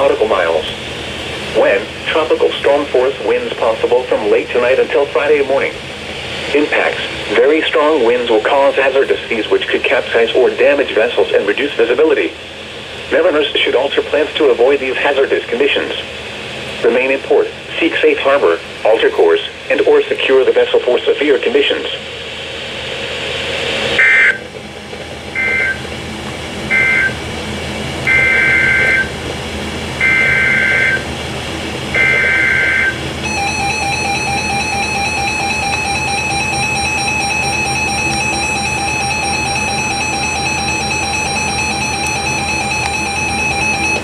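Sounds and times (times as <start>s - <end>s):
steady attention tone: 0.0s - 16.1s, 23.5s - 44.0s
warbling digital header tones: 24.0s - 24.4s, 25.4s - 25.9s, 26.7s - 27.2s, 28.1s - 29.2s, 30.0s - 31.1s, 31.9s - 44.0s.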